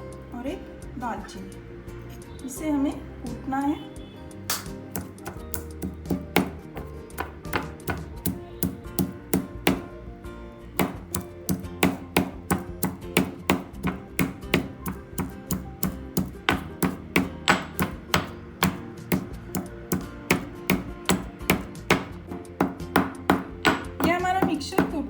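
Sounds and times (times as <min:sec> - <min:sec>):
pestle pounding in mortar: 0:04.5 - 0:10.0, 0:10.8 - 0:25.0.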